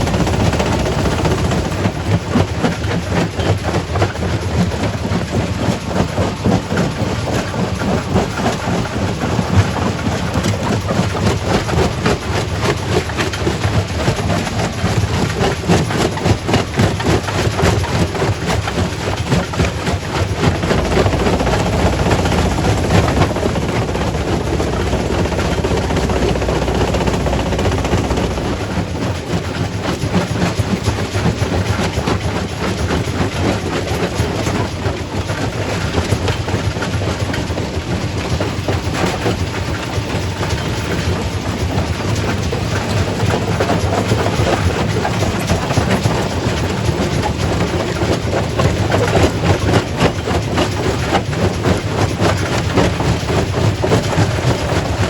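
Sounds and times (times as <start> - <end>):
rock crusher rumbling: 0.0 - 55.0.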